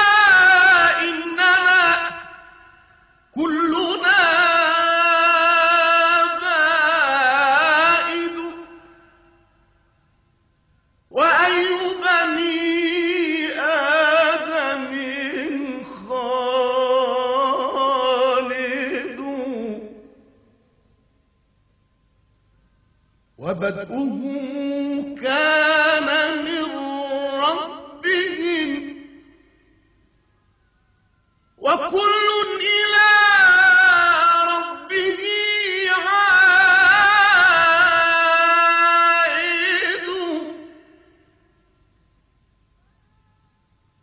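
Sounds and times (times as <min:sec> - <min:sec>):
person chanting: 0:00.0 - 0:09.2, 0:11.1 - 0:20.3, 0:23.4 - 0:29.7, 0:31.6 - 0:41.4
man singing unaccompanied: 0:00.0 - 0:09.5, 0:11.1 - 0:20.5, 0:23.4 - 0:29.8, 0:31.6 - 0:41.4.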